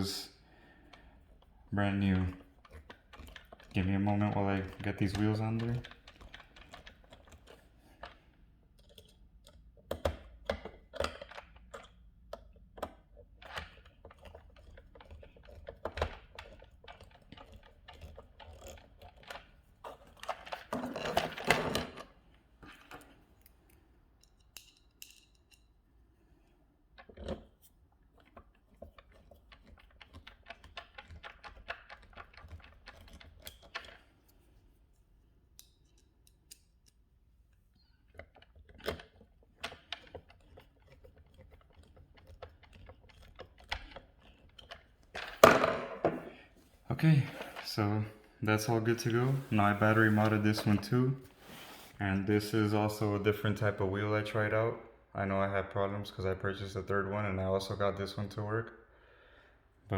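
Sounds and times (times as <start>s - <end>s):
plastic parts clicking and tapping: 2.2s - 25.7s, 26.9s - 34.4s, 37.8s - 46.6s.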